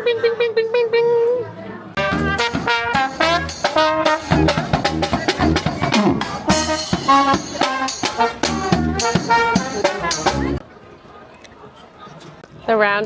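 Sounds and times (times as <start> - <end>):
upbeat brass music with beat: 2.0 - 10.6.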